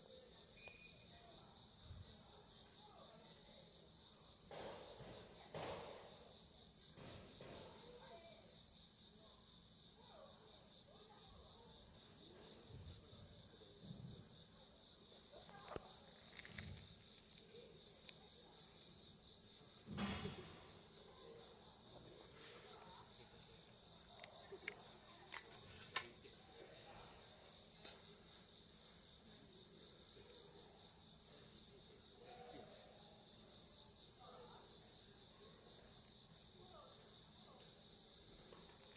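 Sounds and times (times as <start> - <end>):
crickets trilling: 0.0 - 38.9.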